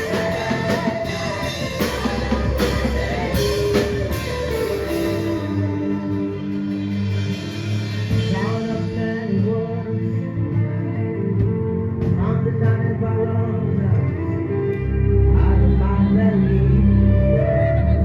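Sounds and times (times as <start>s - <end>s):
person singing: 0.0s - 6.7s
gospel band music: 0.0s - 18.0s.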